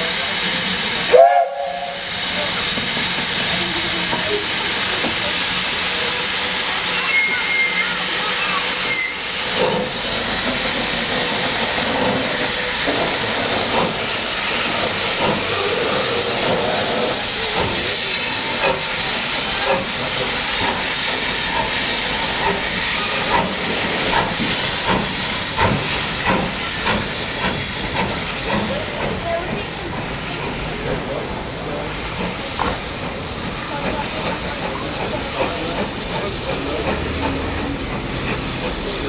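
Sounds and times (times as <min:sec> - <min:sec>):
steam locomotive hissing: 0:00.0 - 0:39.0.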